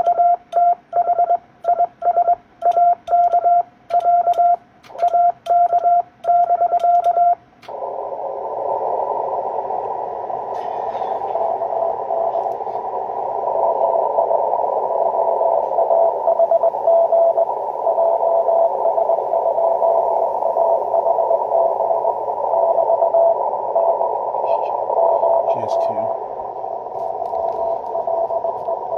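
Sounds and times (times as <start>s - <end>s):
morse code tone: 0.0s - 7.4s, 15.2s - 23.4s
weak morse signal: 0.0s - 28.9s
radio receiver hiss: 7.6s - 28.9s.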